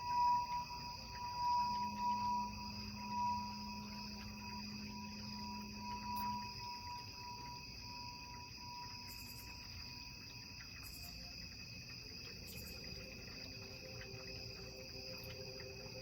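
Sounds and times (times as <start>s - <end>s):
soft ringing tone: 0.0s - 10.0s
crickets trilling: 0.0s - 16.0s
low hum-like tones: 0.0s - 16.0s.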